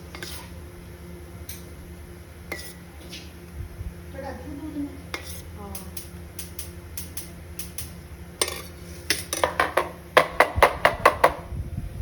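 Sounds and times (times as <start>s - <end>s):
steady low hum: 0.0s - 12.0s
metal utensil clanking on pot: 8.4s - 9.8s.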